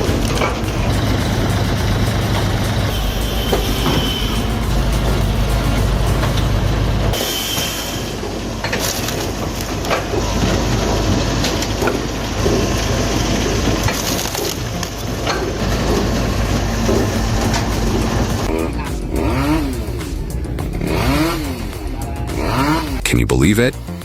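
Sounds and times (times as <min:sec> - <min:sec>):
low engine hum: 0:00.0 - 0:07.2
wood-processing machinery running: 0:00.0 - 0:19.6.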